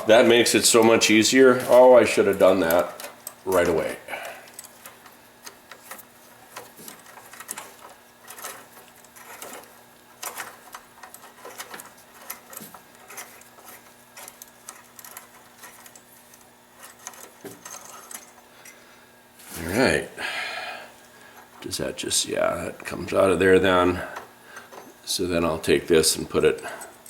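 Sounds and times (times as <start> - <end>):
hand ratchet clicking: 4.5 - 18.8
metal parts clinking: 4.5 - 18.8.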